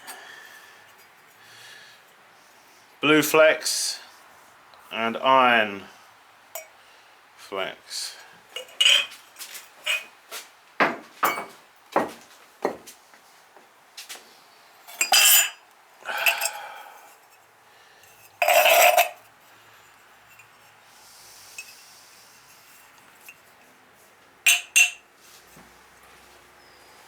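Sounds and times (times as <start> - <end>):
ceramic mugs clinking: 8.5 - 10.1, 10.8 - 11.6, 14.9 - 17.1, 18.2 - 19.3, 24.5 - 25.1
pot bases scraping on surface: 8.6 - 10.1.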